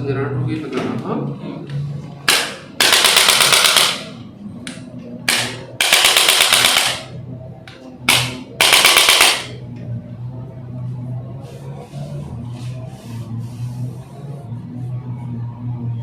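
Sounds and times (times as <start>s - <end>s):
rapid mechanical clicking: 2.3s - 4.2s, 5.3s - 7.1s, 8.1s - 9.6s.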